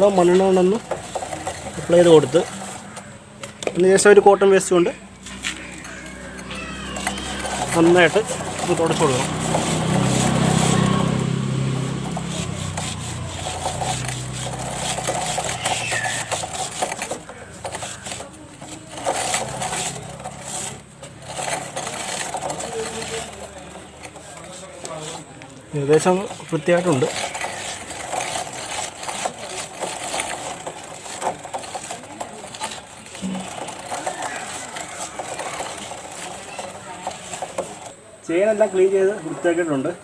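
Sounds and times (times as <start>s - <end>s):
cloth scrubbing a chain: 0.0s - 3.0s, 5.2s - 38.6s
chain links clicking: 5.6s - 25.2s, 25.9s - 37.9s.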